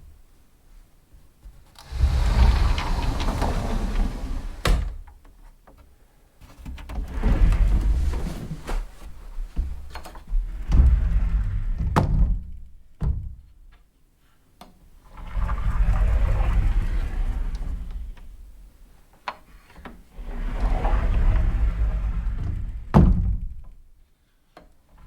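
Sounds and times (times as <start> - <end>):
sliding door rumbling on track: 1.8 - 5.1, 7.0 - 8.9, 10.3 - 12.3, 15.1 - 18.6, 20.1 - 23.6.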